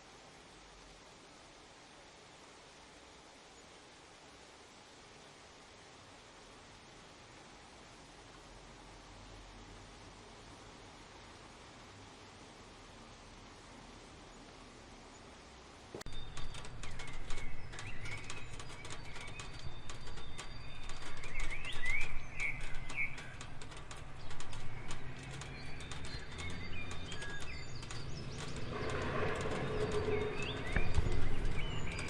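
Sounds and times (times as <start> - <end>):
faint hiss: 0.0 - 32.0
rain falling: 0.0 - 32.0
birds chirping: 16.1 - 32.0.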